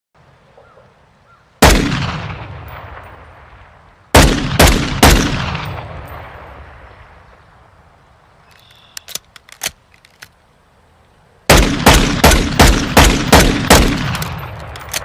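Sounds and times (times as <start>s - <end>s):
pistol shots echoing: 1.6s - 3.4s, 4.1s - 6.8s, 11.5s - 15.0s.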